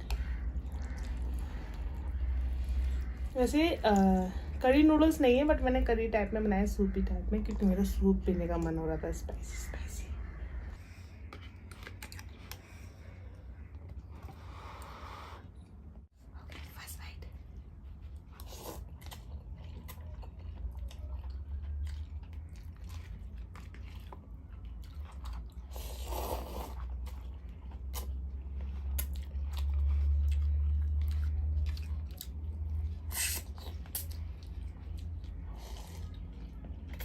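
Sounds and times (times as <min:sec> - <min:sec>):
chewing with mouth clicks: 0:00.0 - 0:04.6, 0:11.2 - 0:14.9, 0:17.5 - 0:37.0
steady low hum: 0:00.0 - 0:37.0.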